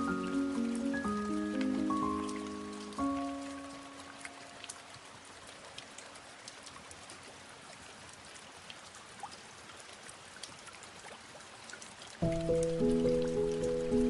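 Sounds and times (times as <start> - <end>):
light rain hiss: 0.0 - 14.0
raindrop ticks: 0.0 - 14.0.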